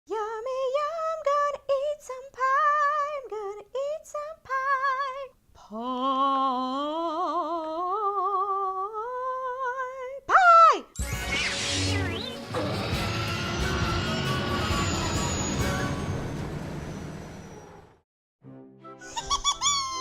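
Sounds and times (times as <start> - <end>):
woman singing with vibrato: 0.1 - 10.3.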